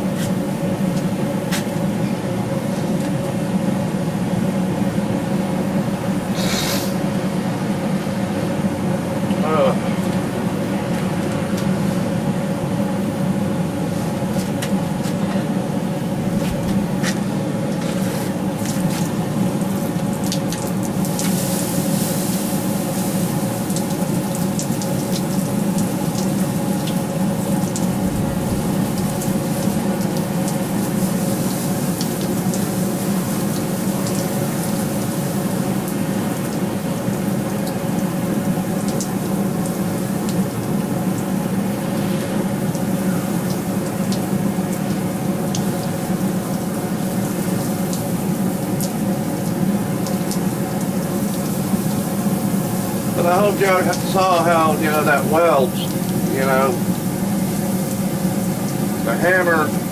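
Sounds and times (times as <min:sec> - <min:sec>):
forge equipment roaring: 0:25.5 - 0:49.9.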